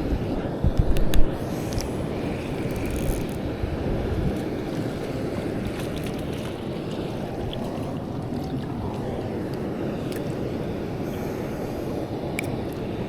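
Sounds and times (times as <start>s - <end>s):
faint clicks: 0.8s - 3.4s
stream water flowing: 1.3s - 13.0s.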